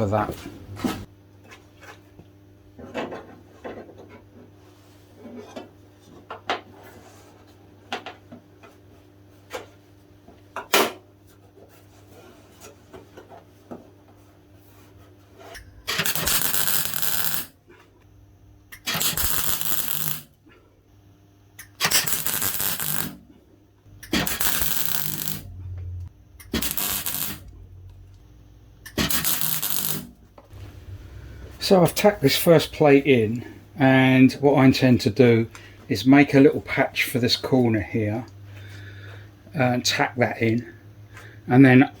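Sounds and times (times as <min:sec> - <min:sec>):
welder crackle: 0:15.9 - 0:17.5, 0:18.8 - 0:20.3, 0:21.6 - 0:23.2, 0:24.0 - 0:25.5, 0:26.4 - 0:28.2, 0:28.8 - 0:33.0.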